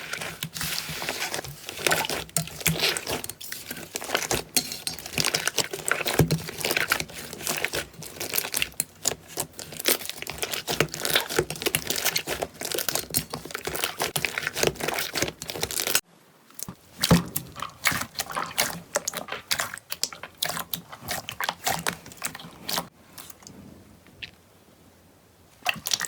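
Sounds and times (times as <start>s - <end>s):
slime crackling and popping: 0.0s - 16.0s.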